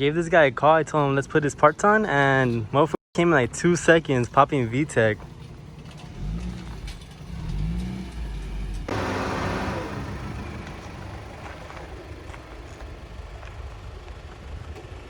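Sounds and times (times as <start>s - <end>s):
car engine revving: 5.1s - 15.0s
loud rush of passing car: 6.1s - 13.2s.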